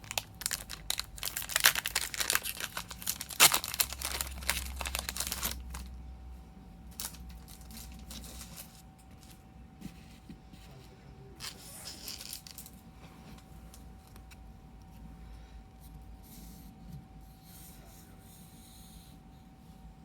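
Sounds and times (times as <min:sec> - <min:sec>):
trading cards rustling and scraping: 0:00.0 - 0:05.9, 0:06.9 - 0:10.8, 0:11.4 - 0:15.1
faint steady whine: 0:00.0 - 0:20.0.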